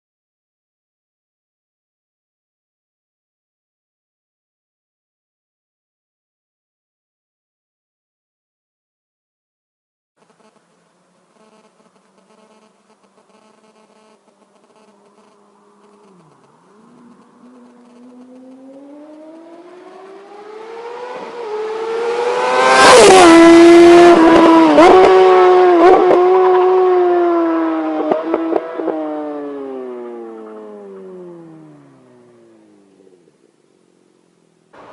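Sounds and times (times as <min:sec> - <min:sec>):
motorcycle passing at speed: 0:11.4 - 0:33.5.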